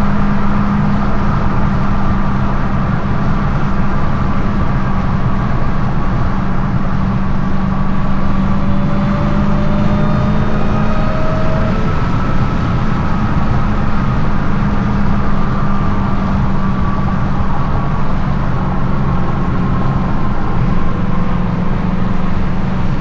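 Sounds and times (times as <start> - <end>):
car exhaust at cruise: 0.0 - 23.0
faint rising whine: 7.2 - 23.0.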